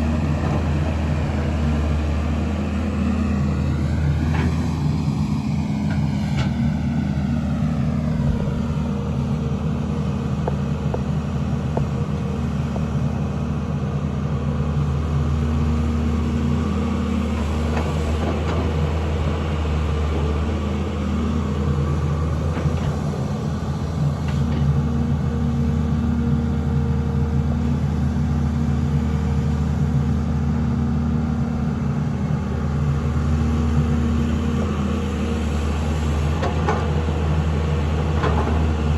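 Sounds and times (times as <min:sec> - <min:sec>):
excavator diesel engine: 0:00.0 - 0:38.9.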